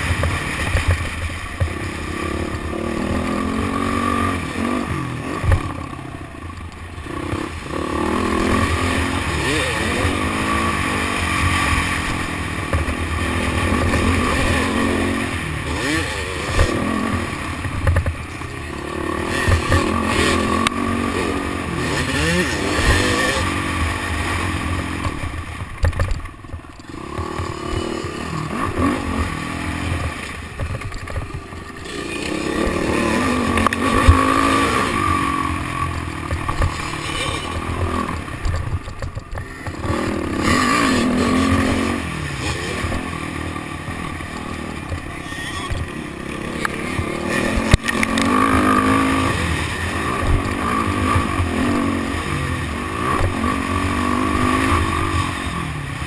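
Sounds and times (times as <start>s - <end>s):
dirt bike engine revving: 0.0s - 56.0s.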